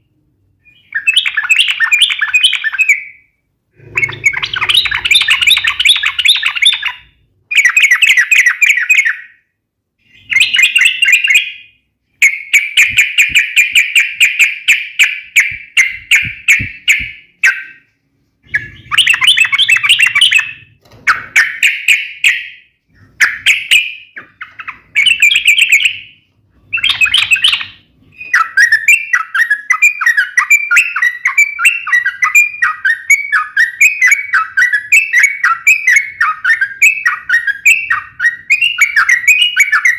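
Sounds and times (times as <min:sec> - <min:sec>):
bird chattering trills: 0:03.8 - 0:07.0.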